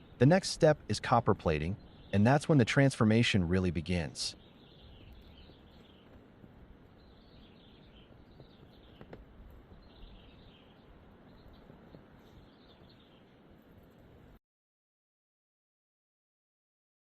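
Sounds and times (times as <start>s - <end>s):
faint background hiss: 0.0s - 14.4s.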